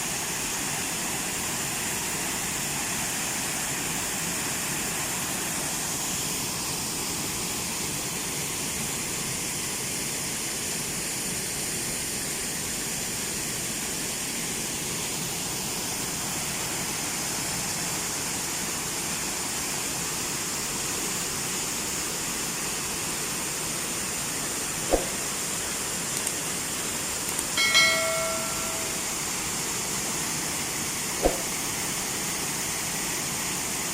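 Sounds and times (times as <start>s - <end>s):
flowing water rushing: 0.0s - 33.9s.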